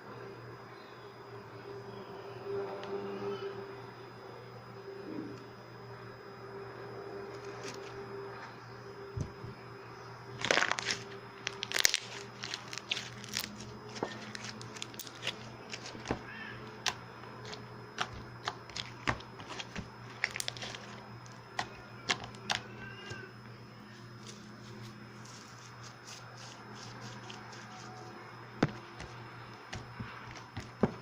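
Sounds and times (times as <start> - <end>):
slime crackling and popping: 10.4 - 16.2, 16.8 - 20.9.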